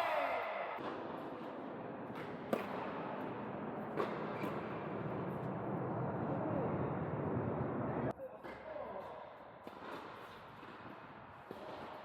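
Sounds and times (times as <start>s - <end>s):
indoor tennis hall din: 0.0s - 12.0s
rackets striking tennis ball: 0.8s - 5.4s, 8.4s - 12.0s.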